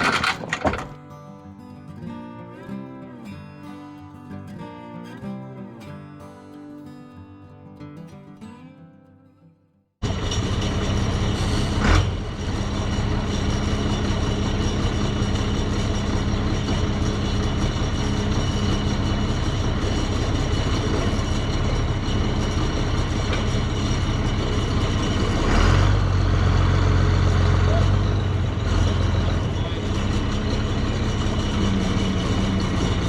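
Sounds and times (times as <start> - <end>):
heavy vehicle engine running: 0.0 - 1.0, 10.0 - 33.0.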